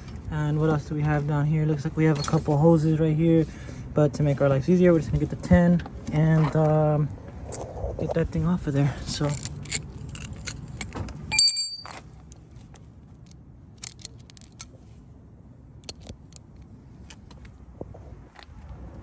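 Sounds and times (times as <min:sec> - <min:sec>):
metal hand tools clinking: 0:11.3 - 0:12.0.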